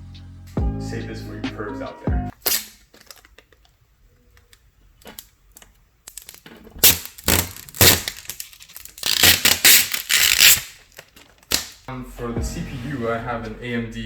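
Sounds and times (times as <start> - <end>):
packaging crinkling and tearing: 6.1 - 11.8.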